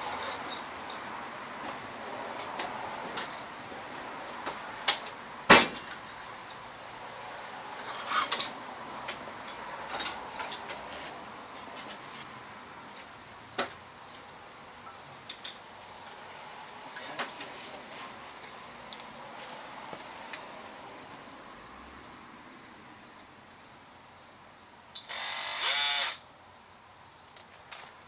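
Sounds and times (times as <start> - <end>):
hand tools and parts clicking: 0.0 - 3.5, 7.8 - 11.1.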